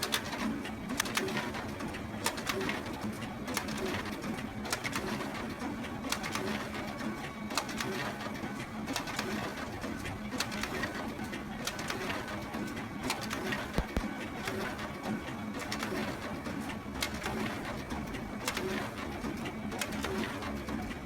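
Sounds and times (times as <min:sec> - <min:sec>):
sharp photocopier clicks: 0:00.0 - 0:01.6, 0:06.1 - 0:06.7, 0:13.0 - 0:14.8
photocopier motor hum: 0:00.0 - 0:21.0.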